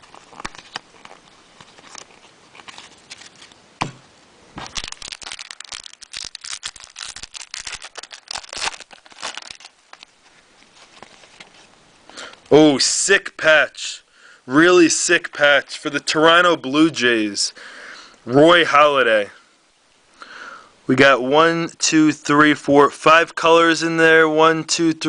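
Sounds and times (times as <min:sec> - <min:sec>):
wrapper crinkling and tearing: 0:00.0 - 0:03.6, 0:04.6 - 0:11.8.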